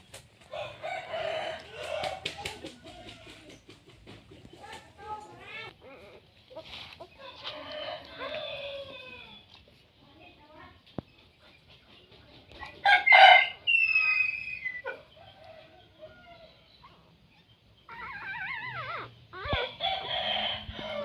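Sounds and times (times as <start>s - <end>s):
rooster crowing: 0.5s - 2.3s, 19.6s - 21.0s.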